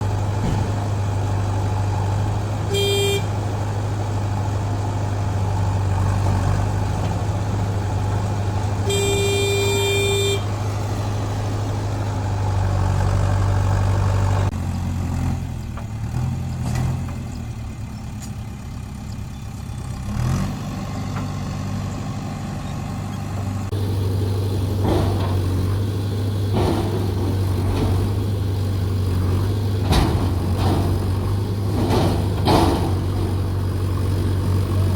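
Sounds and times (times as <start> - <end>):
heavy diesel engines running: 0.0 - 34.9
vehicle horn: 2.7 - 3.4, 8.8 - 10.6.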